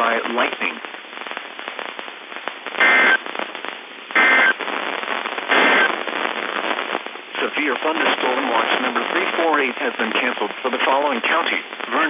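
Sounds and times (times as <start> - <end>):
radio static hiss: 0.0 - 12.0
buzzing digital data tones: 2.8 - 3.2, 4.2 - 4.6.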